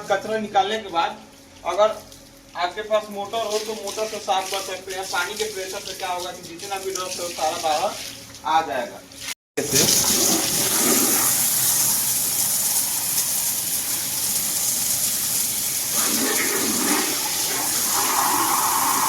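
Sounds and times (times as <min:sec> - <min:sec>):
water jet spraying and splashing: 0:01.6 - 0:08.5, 0:09.2 - 0:19.0.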